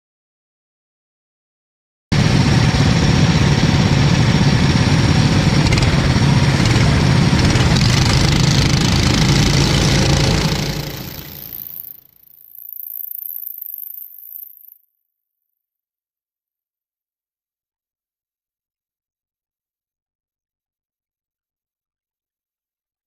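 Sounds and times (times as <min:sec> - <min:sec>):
racing engine rumbling: 0:02.2 - 0:12.0.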